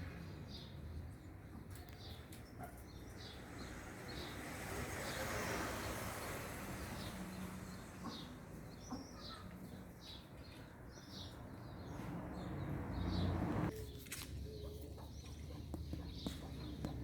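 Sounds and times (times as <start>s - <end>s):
birds chirping: 0.3s - 17.0s
rushing background noise: 11.3s - 13.7s.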